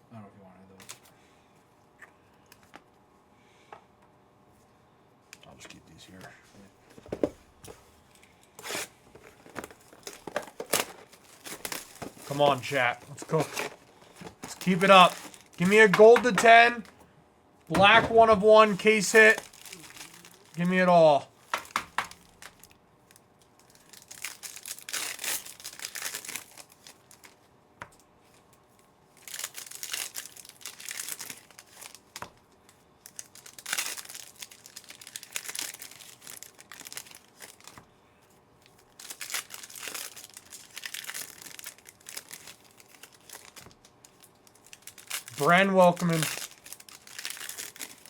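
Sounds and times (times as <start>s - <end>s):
wrappers torn and crinkled: 8.6s - 16.9s, 17.8s - 27.4s, 28.4s - 37.8s, 38.6s - 48.0s.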